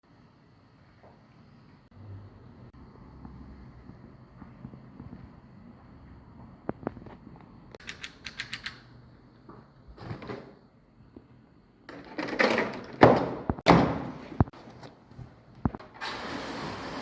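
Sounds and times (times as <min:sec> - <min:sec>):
sharp clicks: 0:07.7 - 0:08.9.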